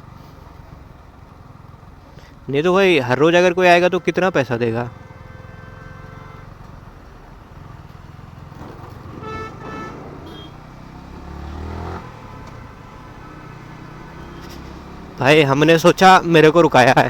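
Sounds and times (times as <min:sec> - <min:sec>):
vehicle horn honks: 0:04.0 - 0:06.6, 0:09.0 - 0:10.8
motorcycle engine running: 0:07.2 - 0:15.4
engine revving: 0:08.4 - 0:15.3.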